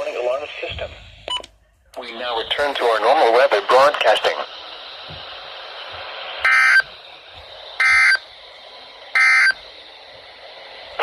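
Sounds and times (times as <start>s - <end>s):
radio hiss: 0.0s - 1.2s, 2.0s - 11.0s
digital data tone bursts: 6.4s - 6.9s, 7.8s - 8.2s, 9.1s - 9.6s.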